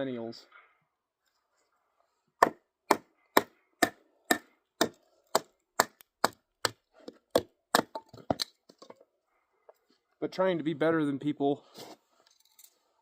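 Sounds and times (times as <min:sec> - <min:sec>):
blade chopping wood: 0:02.4 - 0:08.8.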